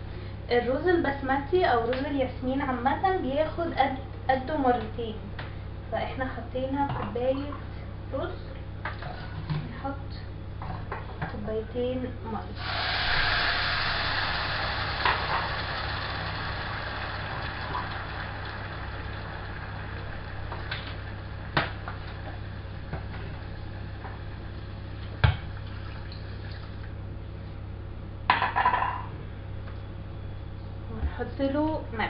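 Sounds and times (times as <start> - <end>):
steady low hum: 0.0 - 32.0
water hissing in hot pot: 12.6 - 26.6.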